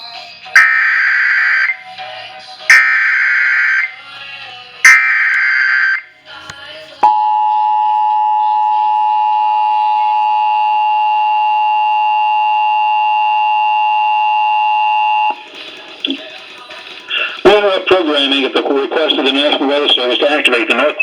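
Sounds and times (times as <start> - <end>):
two-tone alarm: 0.5 - 1.9, 2.7 - 4.0, 4.8 - 6.1, 7.0 - 15.4.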